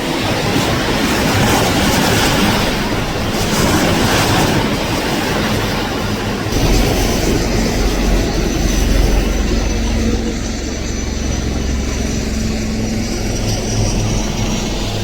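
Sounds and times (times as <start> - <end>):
helicopter rotor beat: 0.0 - 15.0
helicopter rush of noise: 0.0 - 15.0
turbine whine: 0.0 - 15.0.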